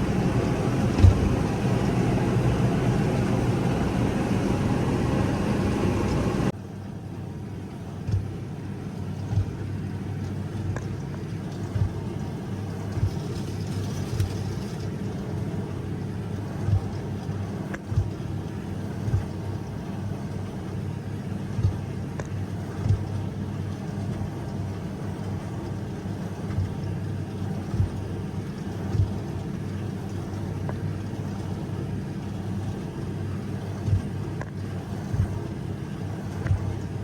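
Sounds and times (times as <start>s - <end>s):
tractor engine drone: 0.0s - 37.0s
knock or thump: 1.0s - 1.3s.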